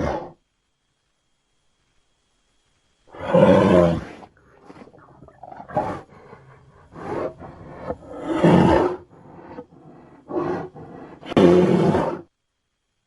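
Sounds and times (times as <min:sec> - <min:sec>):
monster growling and roaring: 0:05.3 - 0:12.2.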